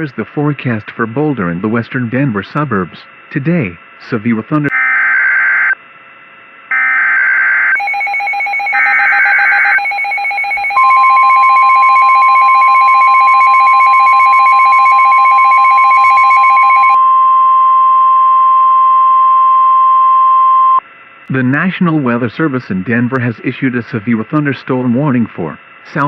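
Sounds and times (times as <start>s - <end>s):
steady warning alarm tone: 0.7s - 5.8s, 6.7s - 20.8s
fast-pulsing electronic beep: 7.8s - 17.0s.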